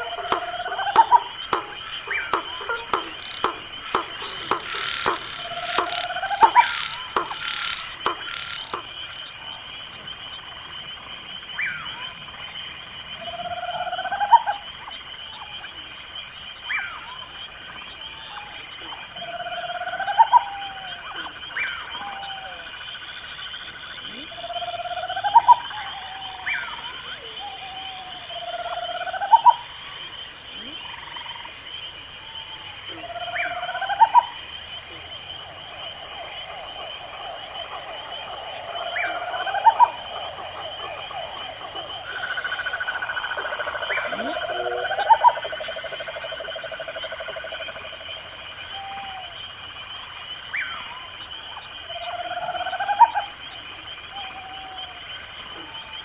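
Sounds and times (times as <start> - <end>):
high ticks: 0.0 - 9.0
crickets trilling: 0.0 - 56.0.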